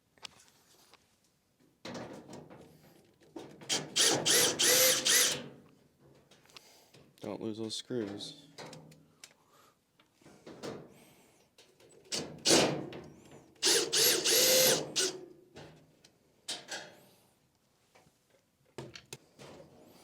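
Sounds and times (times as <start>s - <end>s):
power drill bursts: 3.7s - 5.5s, 13.6s - 15.2s
clatter of panels and screws: 11.6s - 13.0s.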